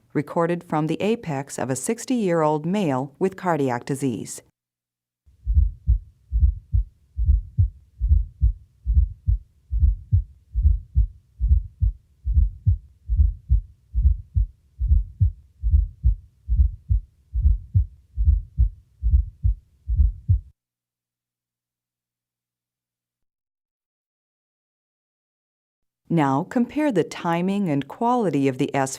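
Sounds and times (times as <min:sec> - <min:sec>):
heartbeat thuds: 0:05.4 - 0:20.5.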